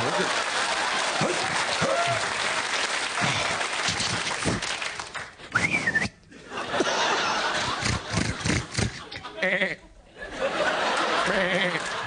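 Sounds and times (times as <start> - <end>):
studio audience laughing: 0.0 - 1.8, 6.3 - 12.0
person whistling rising and wavering: 5.5 - 6.2.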